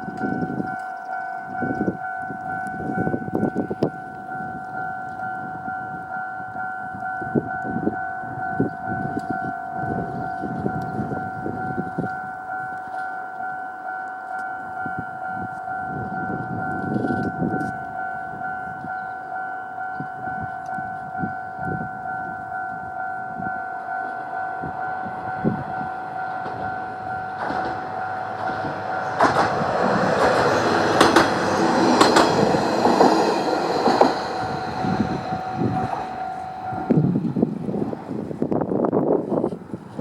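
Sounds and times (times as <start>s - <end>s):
level crossing warning bell: 0.0s - 38.3s
diesel railcar passing: 14.6s - 38.6s
train wheels knocking on rail joints: 23.7s - 37.3s.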